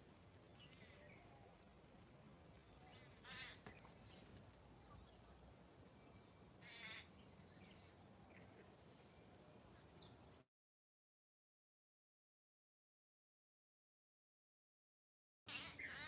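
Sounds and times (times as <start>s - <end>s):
harsh quavering animal calls: 2.9s - 3.7s, 6.6s - 7.2s, 15.5s - 16.0s.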